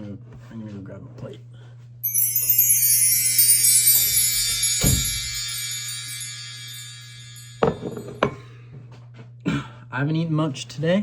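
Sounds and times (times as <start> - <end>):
shimmering bell-like music sting: 2.0 - 8.3.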